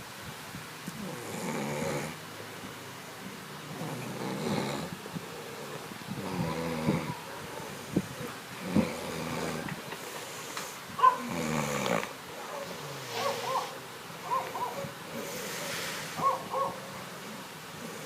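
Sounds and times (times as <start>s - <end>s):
person snoring: 1.0s - 2.2s, 3.7s - 7.2s, 8.6s - 9.7s, 11.2s - 12.1s.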